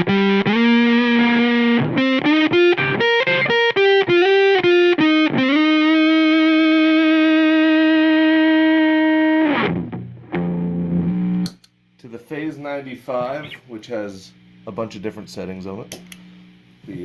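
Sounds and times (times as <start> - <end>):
fuzzy electric guitar notes: 0.0 - 11.7.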